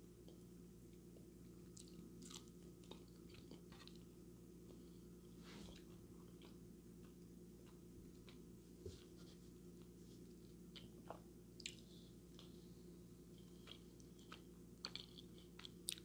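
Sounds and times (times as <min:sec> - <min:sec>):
steady low hum: 0:00.0 - 0:16.0
chewing mouth clicks and smacks: 0:10.7 - 0:12.5, 0:13.3 - 0:16.0.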